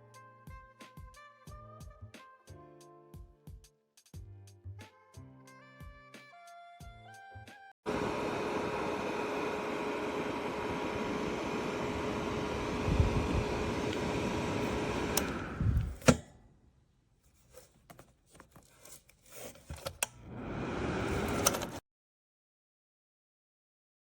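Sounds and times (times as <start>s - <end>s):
space heater fan whirring: 7.9s - 16.4s, 17.4s - 21.8s.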